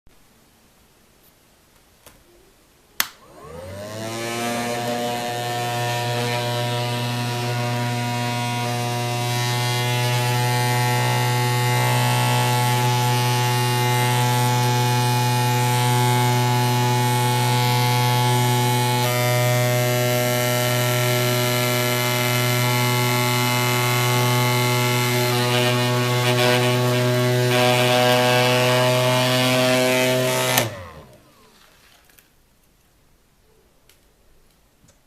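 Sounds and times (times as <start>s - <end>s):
vacuum switch click: 3.0s - 3.3s
handheld vacuum motor humming: 3.2s - 31.4s.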